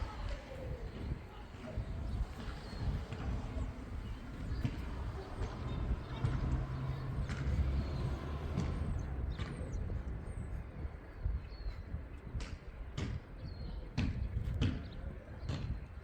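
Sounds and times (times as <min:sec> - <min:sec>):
steady low rumble: 0:00.0 - 0:11.5.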